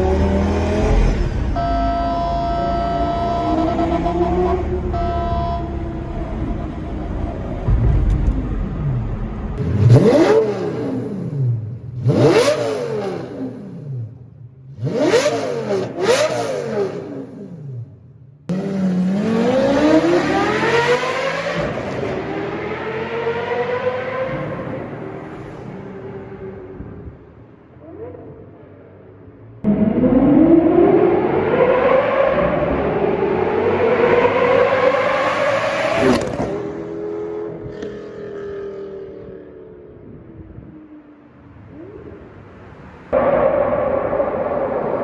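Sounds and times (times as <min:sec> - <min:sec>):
sports car engine revving in tunnel: 0:00.0 - 0:28.6, 0:29.6 - 0:41.1.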